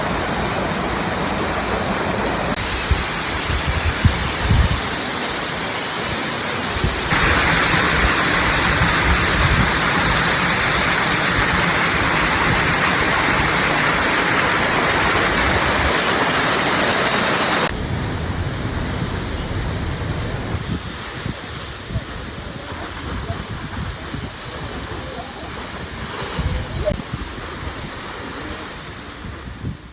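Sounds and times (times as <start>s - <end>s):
waterfall rushing: 0.0s - 17.8s.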